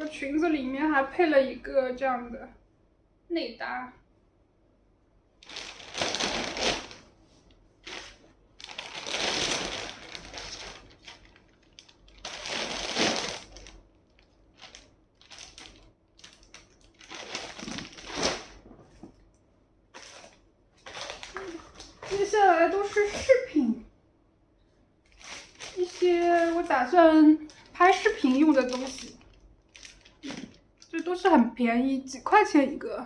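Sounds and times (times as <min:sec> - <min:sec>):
clothes rustling and crinkling: 0:05.4 - 0:19.3, 0:19.9 - 0:23.8, 0:25.0 - 0:31.2.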